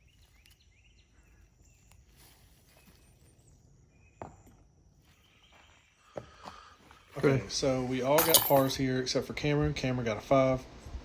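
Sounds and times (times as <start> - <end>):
faint bird chirps: 0.0 - 7.2.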